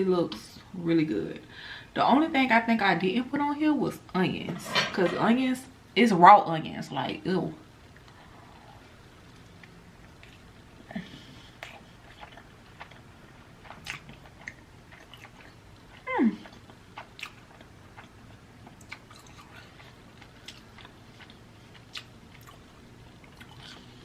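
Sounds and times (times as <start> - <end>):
person chewing food: 7.9 - 24.0.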